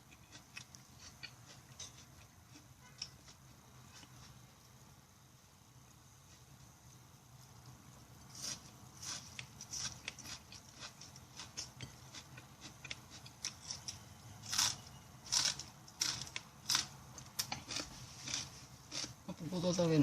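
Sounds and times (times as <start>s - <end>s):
chewing and lip-smacking: 0.0s - 4.2s, 9.0s - 13.9s.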